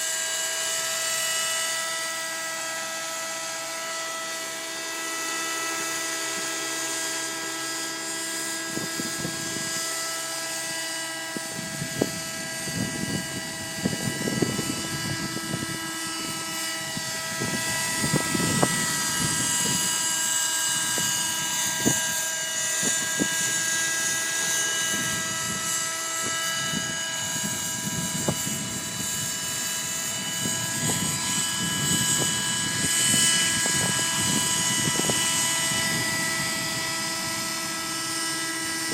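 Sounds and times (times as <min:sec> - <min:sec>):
model helicopter engine whine: 0:00.0 - 0:38.9
wind buffeting microphone: 0:00.0 - 0:38.9.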